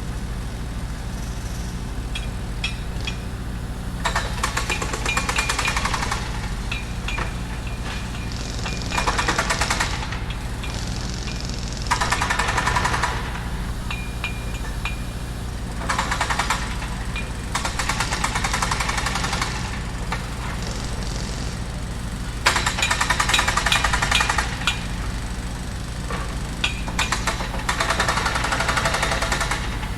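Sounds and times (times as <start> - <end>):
machine engine running: 0.0 - 29.9
jackhammer pounding: 0.1 - 29.9
short metallic clinks: 4.0 - 12.9.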